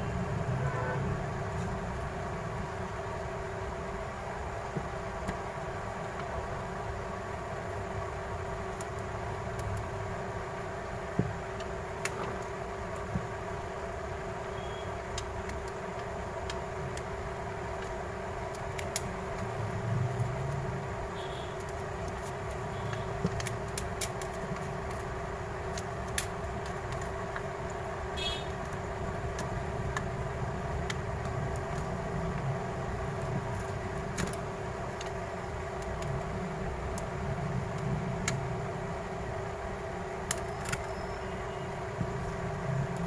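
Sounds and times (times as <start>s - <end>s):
small tools clicking and tapping: 21.6s - 25.1s.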